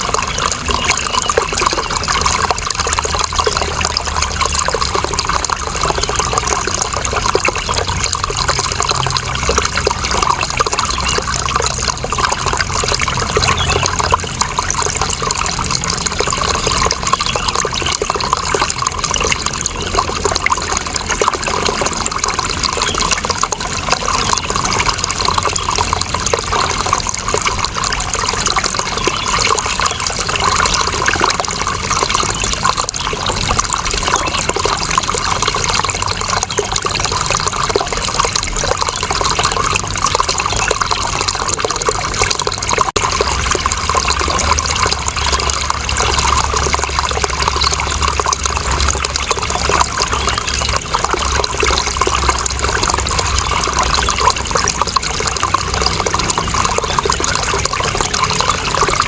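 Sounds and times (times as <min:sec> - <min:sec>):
running water splashing: 0:00.0 - 0:59.0.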